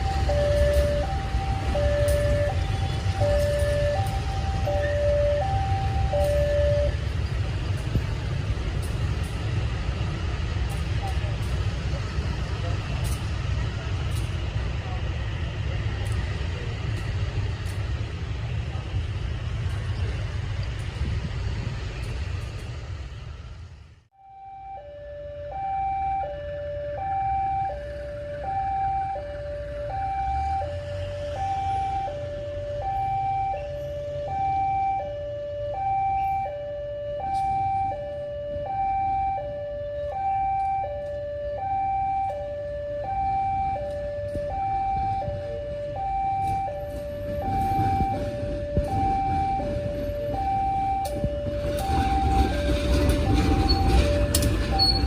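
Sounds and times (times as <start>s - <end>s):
level-crossing alarm tones: 0.0s - 7.5s, 24.2s - 55.0s
low rumble: 47.2s - 55.0s.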